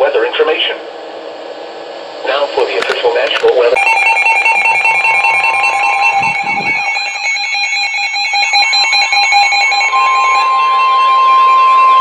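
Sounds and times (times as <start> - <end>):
steady single alarm tone: 3.8 - 12.0
warbling alarm tones: 3.8 - 12.0
weather radio alarm beeps: 3.8 - 12.0.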